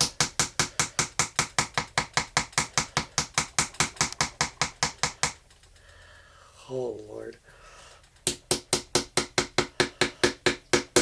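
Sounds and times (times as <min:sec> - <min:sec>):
hammer tapping a chisel: 0:00.0 - 0:05.4, 0:08.2 - 0:11.0.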